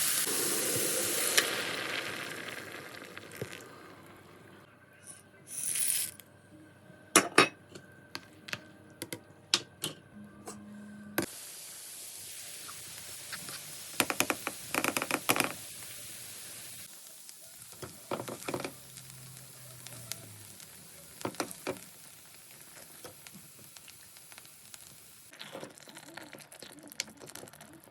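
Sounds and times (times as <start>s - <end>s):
food sizzling in a pan: 0.0s - 4.0s, 11.2s - 25.4s
utensils clinking on pans: 7.2s - 7.8s.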